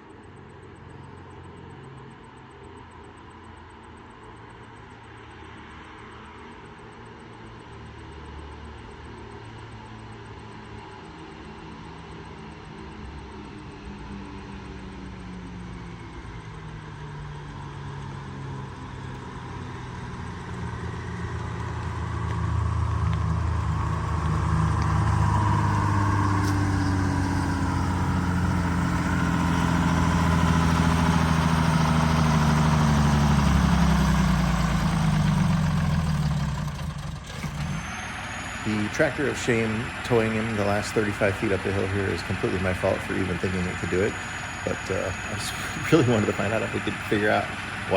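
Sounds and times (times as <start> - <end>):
heavy vehicle engine running: 13.0 - 47.9.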